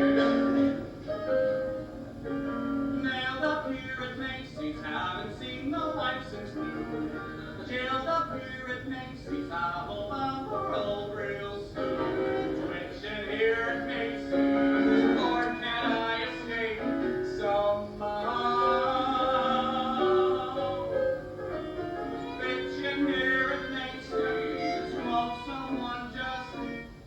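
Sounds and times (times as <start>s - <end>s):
instrumental accompaniment: 0.0s - 3.2s, 11.8s - 27.0s
vocal trio singing: 3.1s - 21.4s, 22.2s - 27.0s.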